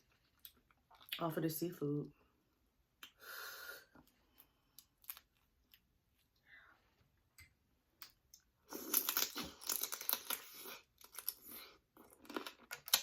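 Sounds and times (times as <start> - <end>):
shellfish shells crackling and tearing: 4.8 - 5.8, 8.7 - 13.0.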